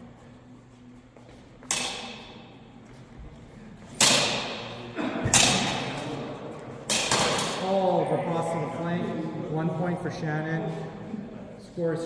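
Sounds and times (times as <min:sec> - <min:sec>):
swords clashing: 0:01.7 - 0:02.5, 0:04.0 - 0:06.1, 0:06.9 - 0:07.7.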